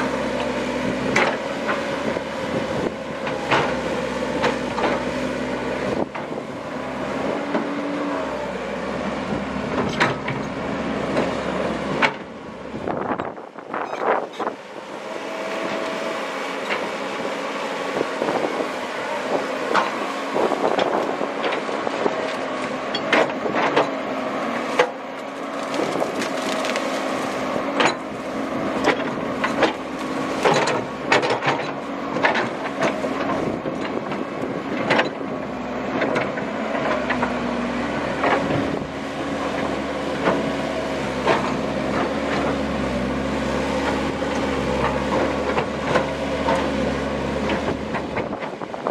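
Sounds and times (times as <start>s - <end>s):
excavator diesel engine running: 0.0s - 48.9s
bucket knocking and scraping stones: 24.8s - 28.0s.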